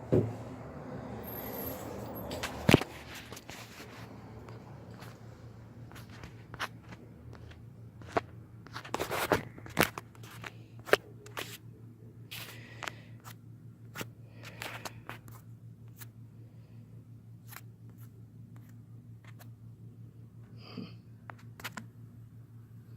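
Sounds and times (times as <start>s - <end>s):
steady low hum: 0.0s - 22.9s.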